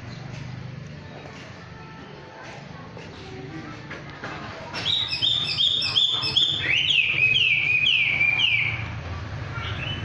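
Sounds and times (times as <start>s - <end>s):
bird whistling song: 4.8s - 8.9s.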